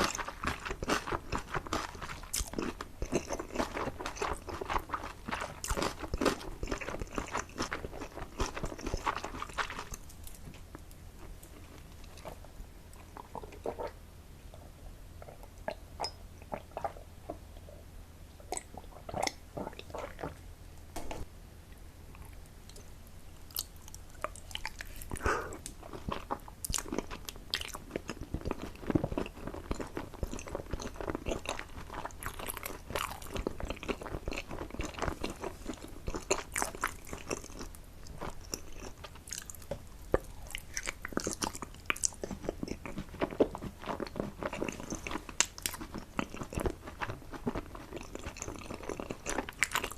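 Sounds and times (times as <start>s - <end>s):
person chewing and biting food: 0.0s - 10.4s, 23.5s - 49.9s.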